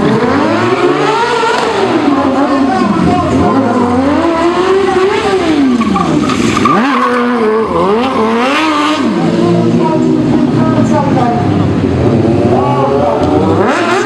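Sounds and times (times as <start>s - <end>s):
motorcycle engine revving: 0.0s - 14.0s
tyre squealing: 4.8s - 9.3s.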